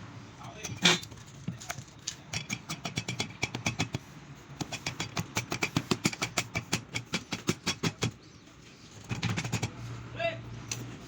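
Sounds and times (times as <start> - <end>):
metallic tool clicks and taps: 2.1 - 4.0, 4.6 - 8.1.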